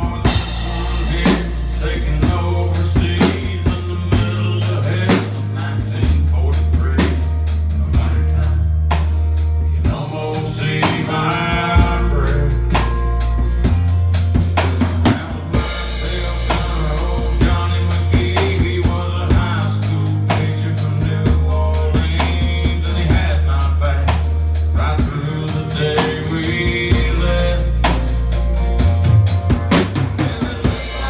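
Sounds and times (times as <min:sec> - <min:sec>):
country song instrumental: 0:00.0 - 0:31.0
drum kit playing: 0:00.0 - 0:31.0
sustained bass line: 0:00.0 - 0:31.0.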